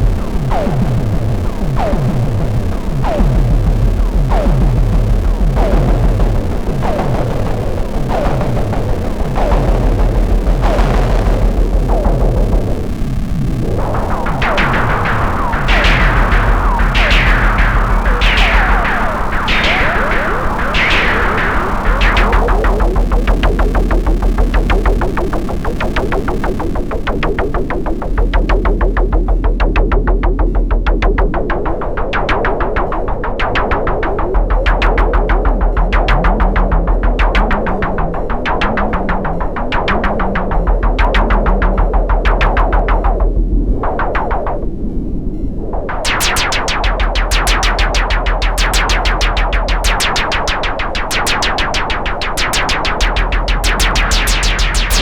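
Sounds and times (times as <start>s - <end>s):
deep bass tone: 0.0s - 31.5s, 34.2s - 38.4s, 40.0s - 44.0s, 52.4s - 55.0s
rapid synthesized clicks and pulses: 0.0s - 55.0s.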